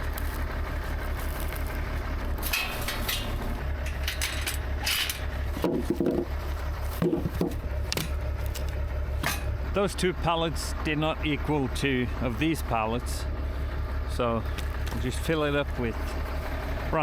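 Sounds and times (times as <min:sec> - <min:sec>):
tractor diesel engine running: 0:00.0 - 0:17.0
wood knocking and clattering: 0:05.6 - 0:09.5.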